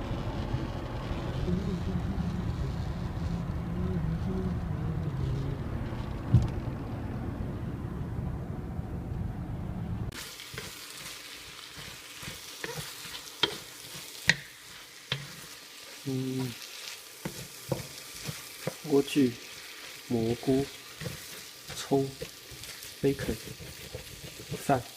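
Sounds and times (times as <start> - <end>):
car interior rumble: 0.0 - 10.1
food sizzling in a pan: 10.1 - 24.9
spatula clicks and scrapes: 10.5 - 19.0, 20.5 - 24.9.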